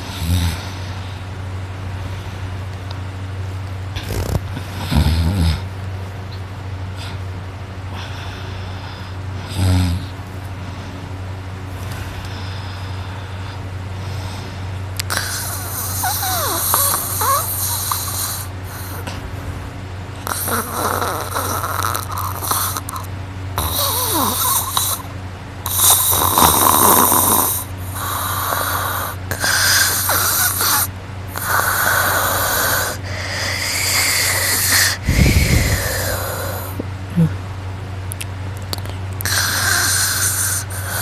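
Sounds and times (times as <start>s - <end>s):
person snoring loudly: 0.0s - 0.8s, 4.0s - 5.7s, 15.1s - 19.1s, 20.2s - 37.4s, 39.2s - 41.0s.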